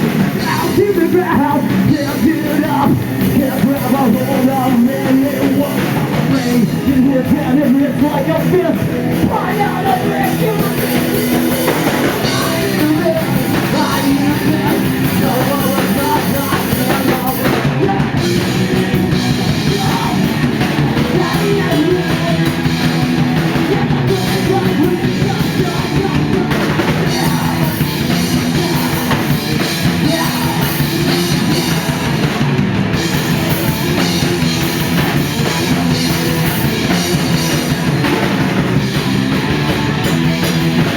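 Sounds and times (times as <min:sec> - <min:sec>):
drum kit: 0:00.0 - 0:40.9
electric guitars: 0:00.0 - 0:40.9.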